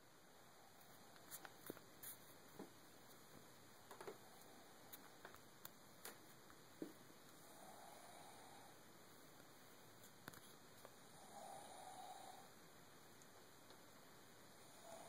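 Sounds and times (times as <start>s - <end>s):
faint room hiss: 0.0s - 15.0s
small clicks and ticks: 3.9s - 6.6s, 9.4s - 11.0s.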